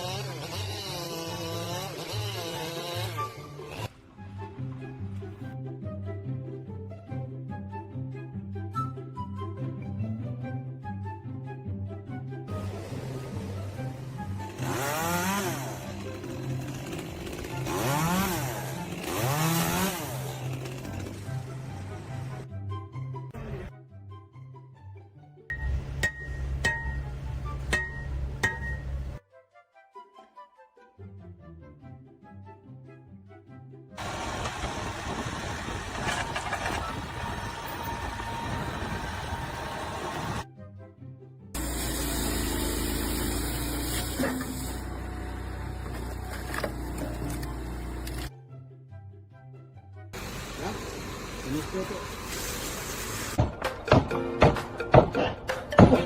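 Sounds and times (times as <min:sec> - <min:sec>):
small engine revving: 0:00.0 - 0:03.9, 0:12.5 - 0:22.3, 0:34.0 - 0:40.4, 0:41.6 - 0:48.3
background music: 0:01.5 - 0:34.0, 0:40.4 - 0:41.6, 0:48.3 - 0:50.8, 0:53.4 - 0:56.0.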